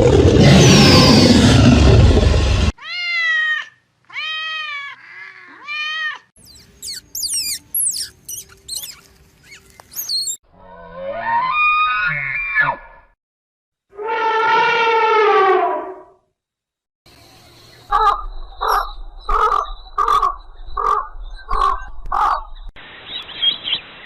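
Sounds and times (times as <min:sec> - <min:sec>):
rapid high chirps and whistles: 0:06.4 - 0:10.4
wavering pitched animal call: 0:06.4 - 0:12.8.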